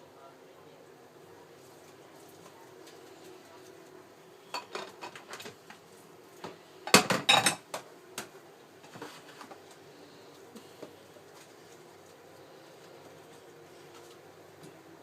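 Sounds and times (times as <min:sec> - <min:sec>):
dishes and cutlery clinking: 0:04.5 - 0:05.6, 0:06.9 - 0:07.8.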